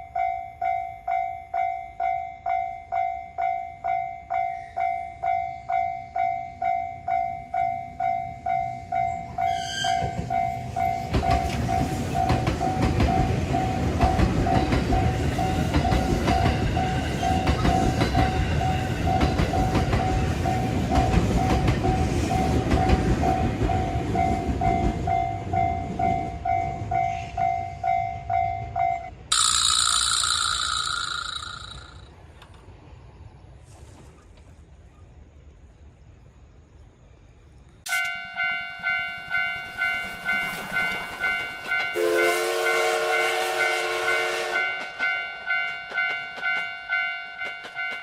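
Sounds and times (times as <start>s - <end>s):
train rumble and wheel clatter: 0.0s - 29.3s, 37.8s - 48.0s
railroad crossing bell ringing: 0.0s - 32.1s, 37.9s - 48.0s
bright high sound: 29.3s - 32.1s
train horn blast: 41.9s - 45.0s.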